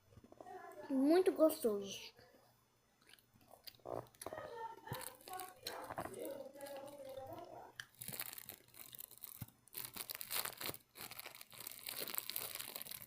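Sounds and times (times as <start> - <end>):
candy crunching: 3.0 - 13.0
wrapper crinkling: 4.8 - 13.0.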